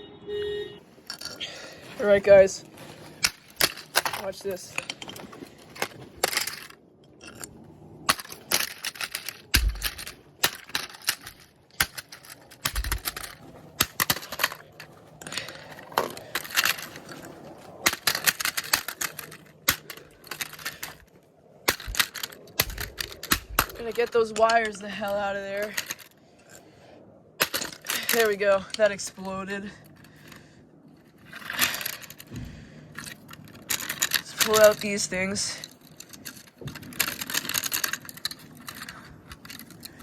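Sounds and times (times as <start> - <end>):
plastic parts clicking and cracking: 1.0 - 26.7, 27.4 - 40.0.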